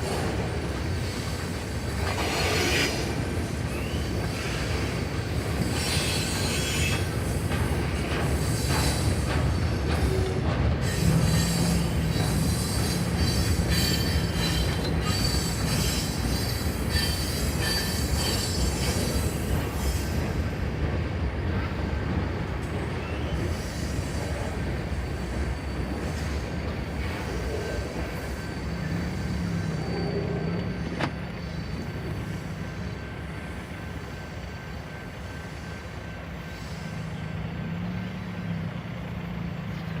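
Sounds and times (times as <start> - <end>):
freight train wheels rumbling on rail: 0.0 - 40.0
high-pitched wheel squeal: 10.1 - 20.2, 25.2 - 33.0.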